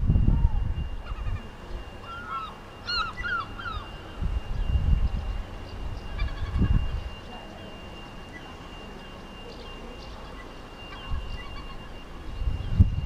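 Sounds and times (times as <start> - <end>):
low rumble: 0.0 - 1.9
thin high tone: 0.0 - 13.0
gull calling: 0.3 - 4.2, 6.0 - 8.6, 9.4 - 12.2.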